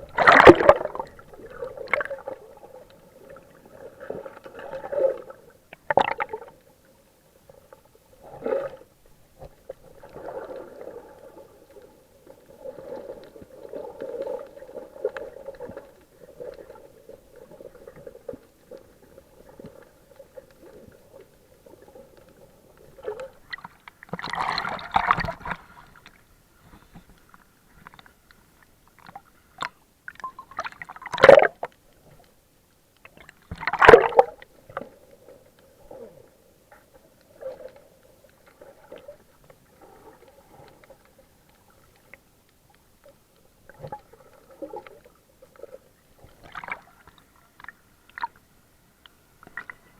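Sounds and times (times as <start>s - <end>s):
water splashing: 0.0s - 6.5s.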